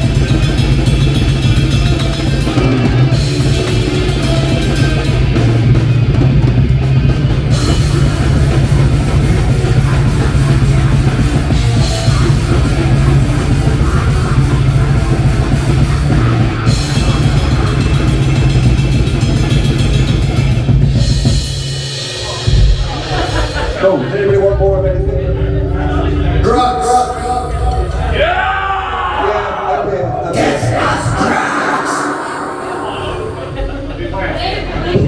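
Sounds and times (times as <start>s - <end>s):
electric guitar: 0.0s - 23.7s
drum kit: 0.0s - 29.3s
rock band playing loudly: 0.0s - 35.0s.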